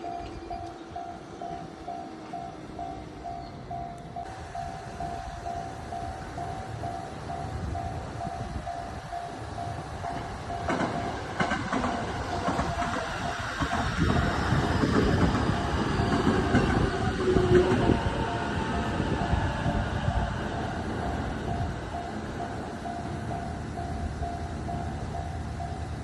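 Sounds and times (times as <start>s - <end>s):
level-crossing bell ringing: 0.0s - 11.4s, 17.9s - 26.0s
electric train passing: 0.0s - 26.0s.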